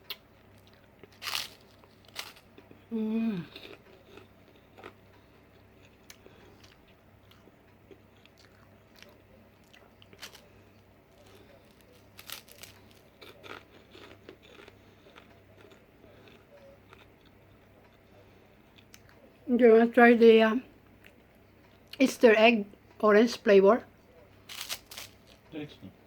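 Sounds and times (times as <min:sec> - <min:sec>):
rice cakes crunching: 0:00.0 - 0:19.3, 0:24.3 - 0:25.5.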